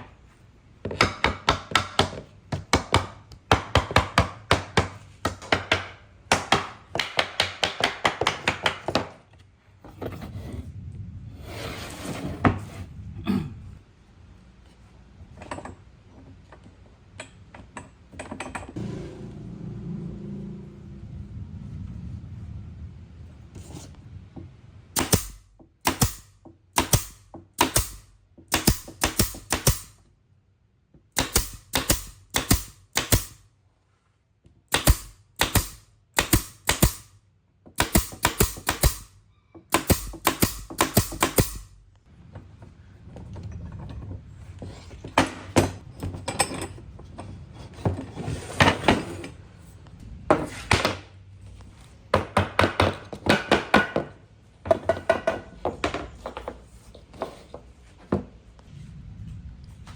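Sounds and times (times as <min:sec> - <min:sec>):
low hum: 0:09.8 - 0:14.8, 0:18.7 - 0:25.6, 0:58.5 - 0:59.9.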